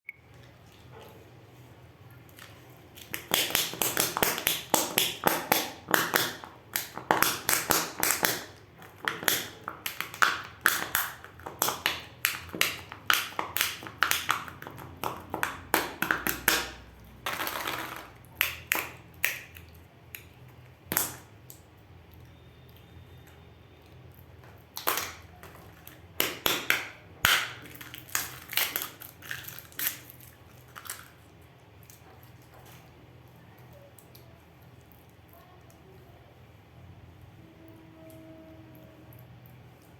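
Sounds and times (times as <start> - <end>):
wrappers crinkling and tearing: 27.6 - 31.4.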